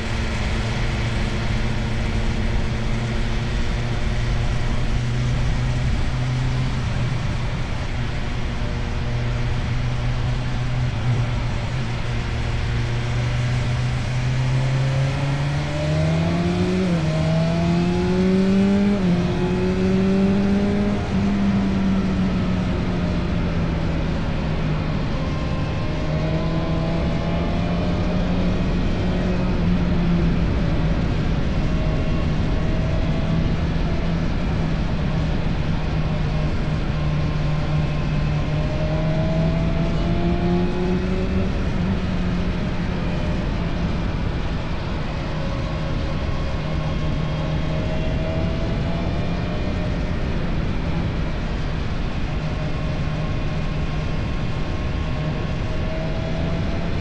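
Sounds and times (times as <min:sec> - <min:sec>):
motorcycle engine revving: 0:00.0 - 0:29.5
wind noise: 0:00.0 - 0:57.0.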